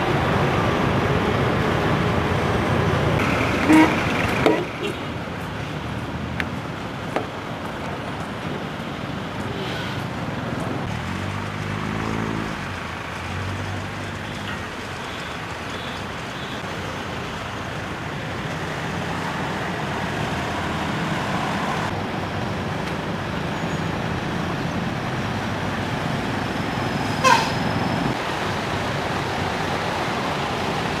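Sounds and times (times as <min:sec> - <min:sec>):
road traffic with vehicles passing: 0:00.0 - 0:31.0
short sharp squeak: 0:27.2 - 0:27.6.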